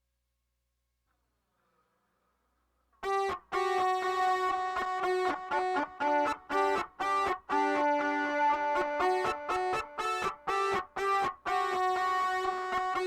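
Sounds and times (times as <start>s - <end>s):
filtered melodica melody: 3.2s - 10.8s.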